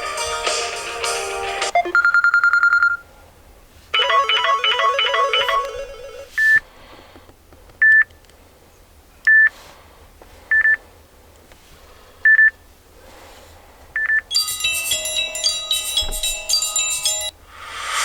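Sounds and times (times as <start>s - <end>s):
melodic phone ringtone: 0.1s - 3.0s, 4.0s - 6.6s, 14.3s - 17.4s.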